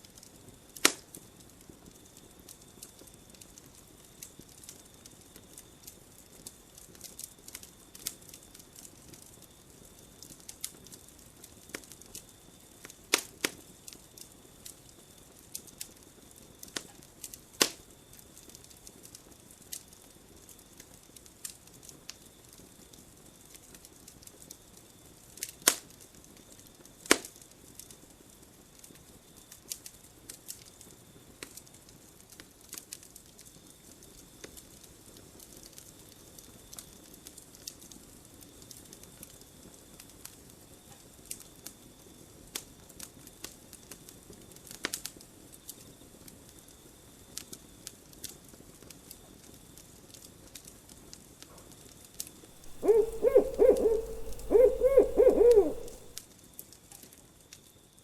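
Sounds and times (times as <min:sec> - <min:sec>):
faint steady hiss: 0:52.6 - 0:56.2.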